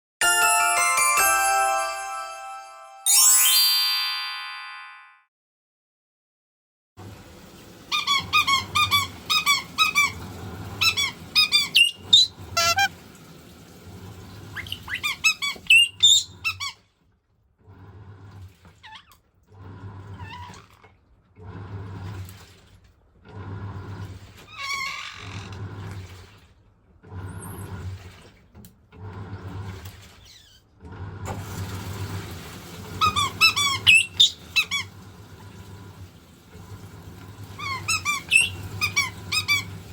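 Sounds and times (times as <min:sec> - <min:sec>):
washing machine churning: 0:07.0 - 0:16.4, 0:17.1 - 0:39.9
parrot shrill calls: 0:10.8 - 0:12.9, 0:14.6 - 0:16.8, 0:33.0 - 0:34.9, 0:37.6 - 0:39.7.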